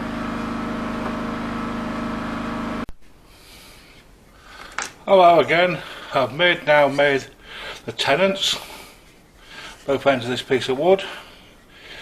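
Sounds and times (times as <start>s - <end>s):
electric motor humming: 0.0s - 2.9s.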